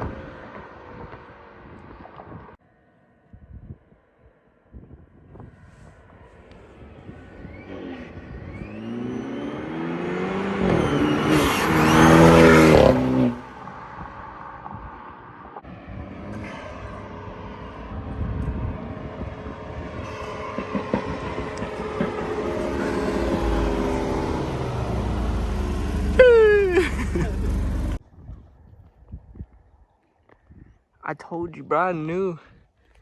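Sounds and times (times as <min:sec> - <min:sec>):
intake and turbo rush: 0:00.0 - 0:02.6, 0:04.8 - 0:28.0
car engine accelerating hard: 0:06.5 - 0:28.0.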